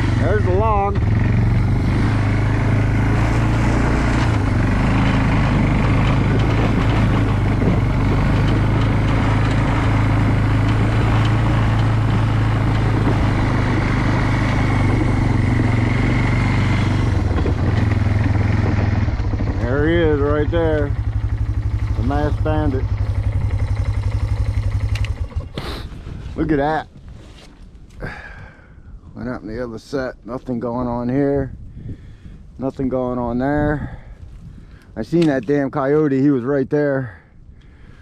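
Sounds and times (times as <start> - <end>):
off-road vehicle engine running: 0.0 - 26.9, 28.0 - 28.6, 29.2 - 36.6.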